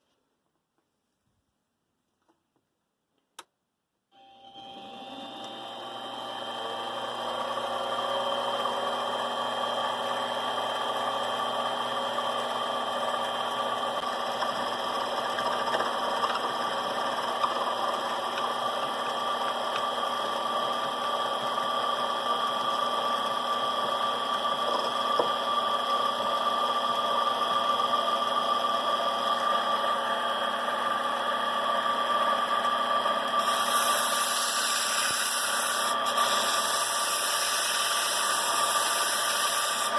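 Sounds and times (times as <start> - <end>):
hiss: 33.5 - 39.9.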